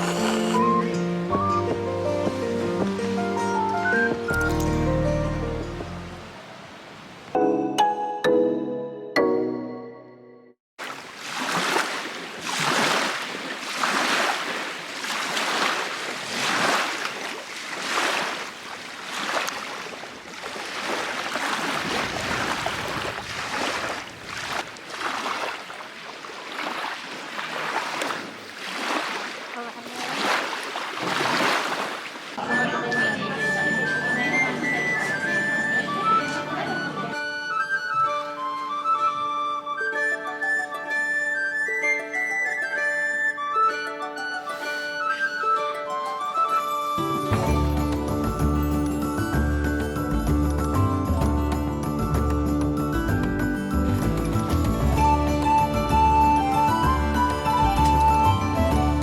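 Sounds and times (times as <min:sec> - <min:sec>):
small waves washing onto shore: 0:00.0 - 0:01.2, 0:10.8 - 0:32.5
flute-like melody: 0:00.0 - 0:02.6, 0:03.2 - 0:05.5, 0:32.4 - 0:50.0, 0:54.8 - 0:59.0
sustained accompaniment: 0:32.4 - 0:39.3.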